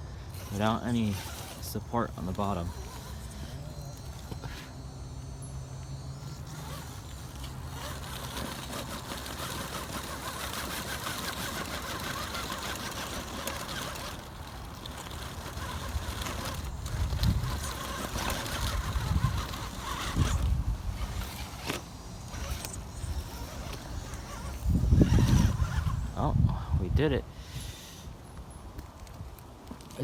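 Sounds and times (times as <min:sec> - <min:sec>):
electric motor and gears whirring: 0:00.0 - 0:30.0
tyres scrabbling on stone: 0:06.6 - 0:26.1.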